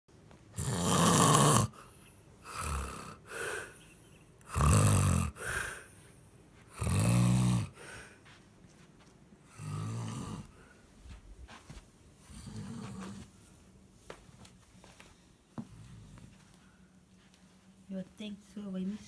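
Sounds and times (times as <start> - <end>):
person snoring loudly: 0.6 - 3.8, 4.4 - 5.9, 6.7 - 8.0, 9.5 - 10.5
quiet breaths: 1.7 - 19.0.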